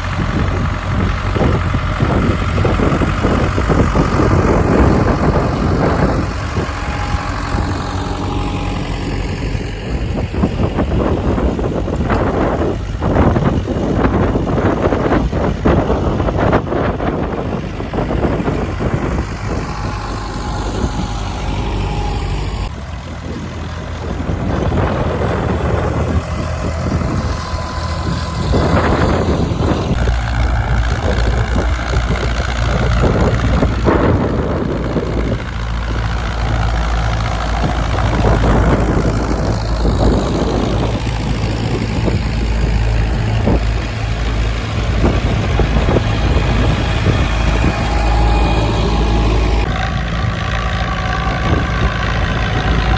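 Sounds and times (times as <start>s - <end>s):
tractor engine running: 0.0s - 52.9s.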